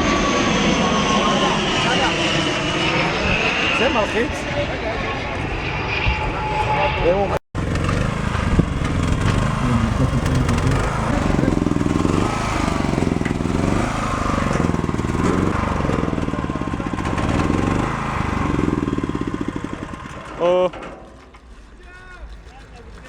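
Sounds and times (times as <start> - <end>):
engine revving: 7.6 - 20.8.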